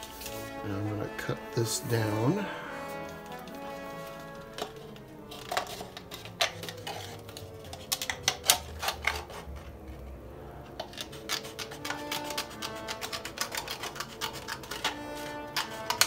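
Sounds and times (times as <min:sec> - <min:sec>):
background music: 0:00.0 - 0:16.0
scissors snipping: 0:10.8 - 0:16.0.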